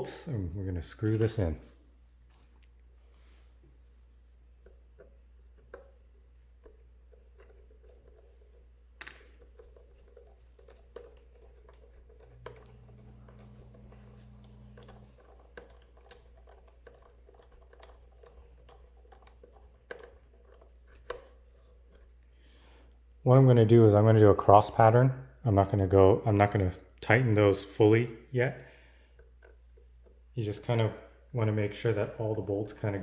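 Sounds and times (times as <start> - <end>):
small clicks taps and scrapes: 4.6 - 23.0, 29.0 - 30.3.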